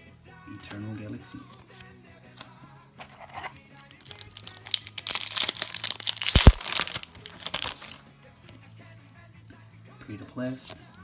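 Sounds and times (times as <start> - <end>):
foil wrapper crinkling and tearing: 3.9 - 8.1.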